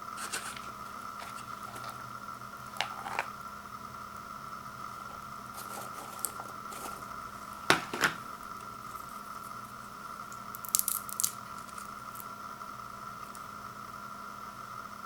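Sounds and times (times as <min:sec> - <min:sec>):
electrical hum: 0:00.0 - 0:15.0
packaging crinkling: 0:00.2 - 0:02.0, 0:04.9 - 0:09.7, 0:10.3 - 0:12.3.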